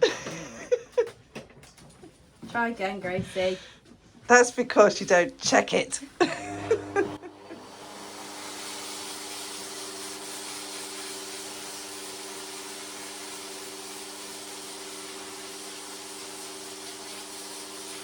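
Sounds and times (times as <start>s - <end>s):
dog grooming dryer blowing air: 6.2s - 18.0s.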